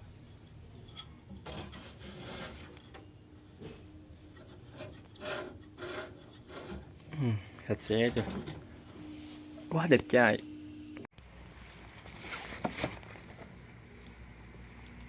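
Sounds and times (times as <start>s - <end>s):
rubbing and scraping: 0.8s - 7.1s.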